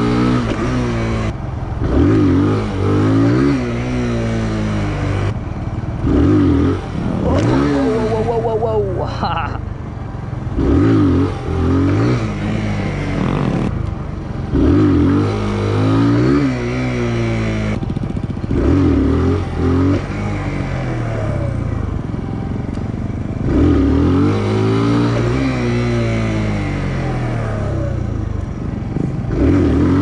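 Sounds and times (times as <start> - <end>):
motorcycle engine revving: 0.0 - 30.0.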